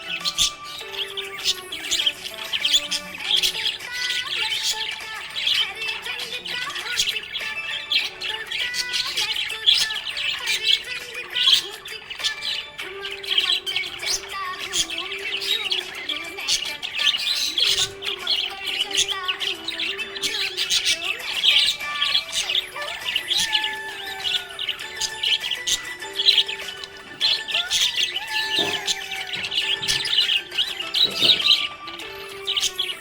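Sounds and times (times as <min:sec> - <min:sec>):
budgerigars chirping: 0:00.0 - 0:33.0
slow melodic background music: 0:00.0 - 0:33.0.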